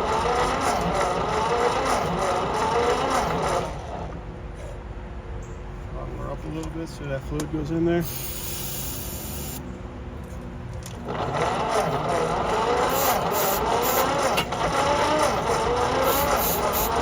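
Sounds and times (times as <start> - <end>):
starter motor cranking engine: 0.0 - 4.1, 8.0 - 9.6, 10.9 - 17.0.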